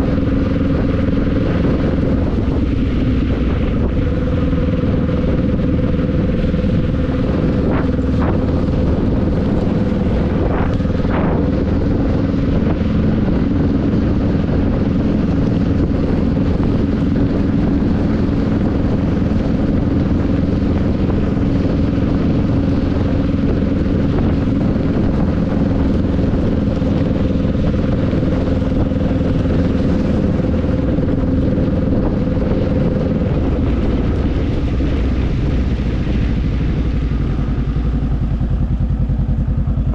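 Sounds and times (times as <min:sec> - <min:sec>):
motorbike engine running: 0:00.0 - 0:39.9
road noise: 0:00.0 - 0:39.9
wind noise: 0:00.0 - 0:39.9.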